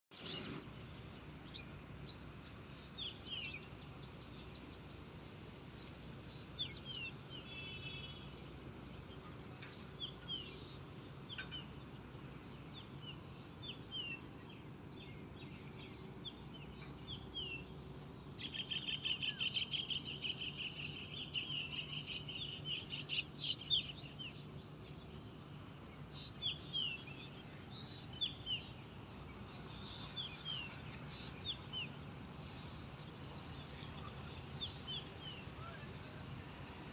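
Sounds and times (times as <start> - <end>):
birds chirping: 0.1 - 36.5.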